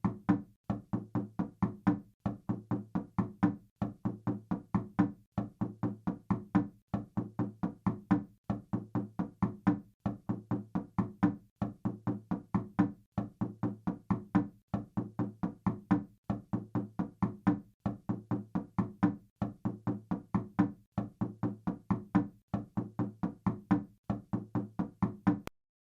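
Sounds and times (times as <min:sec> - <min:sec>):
knocking on wooden door: 0:00.0 - 0:25.5.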